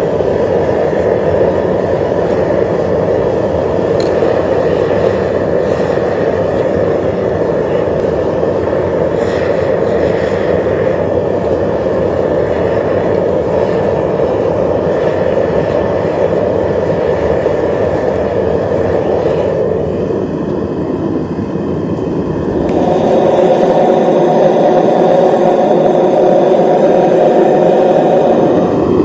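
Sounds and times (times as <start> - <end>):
propane burner roaring: 0.0 - 29.0.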